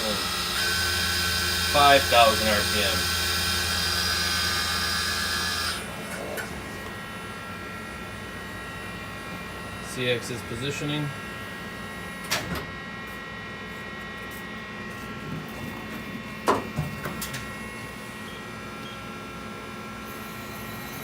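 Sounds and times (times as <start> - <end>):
lathe humming: 0.0 - 12.2.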